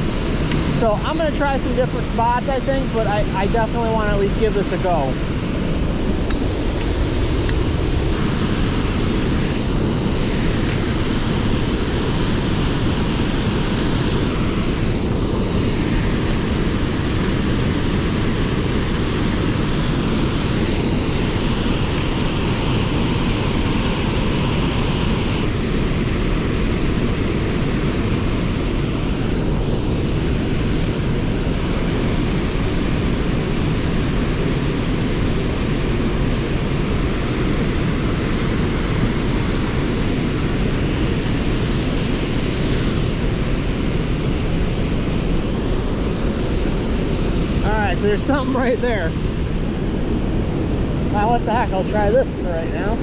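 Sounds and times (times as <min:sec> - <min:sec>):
waterfall rushing: 0:00.0 - 0:53.0.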